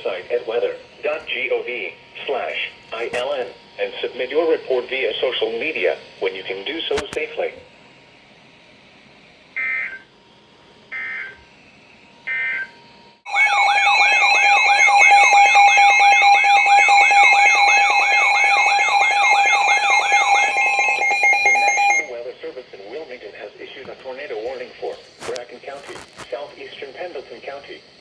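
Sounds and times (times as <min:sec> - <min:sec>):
steady alert tone: 0:13.3 - 0:22.1.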